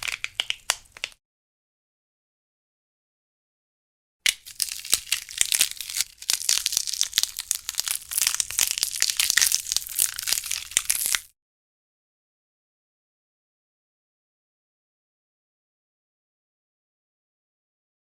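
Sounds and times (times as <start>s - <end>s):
crumpling crackling snaps: 0.0s - 1.2s, 4.3s - 11.3s.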